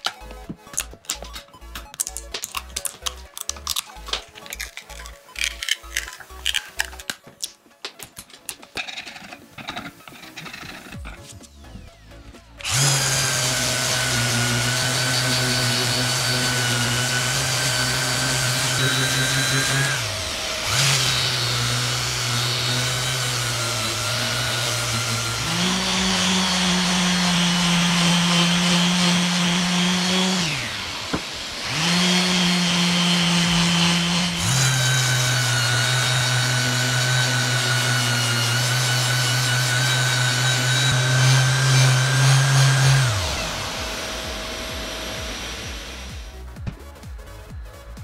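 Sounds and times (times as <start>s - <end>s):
electric power tool motor humming: 9.6s - 46.6s.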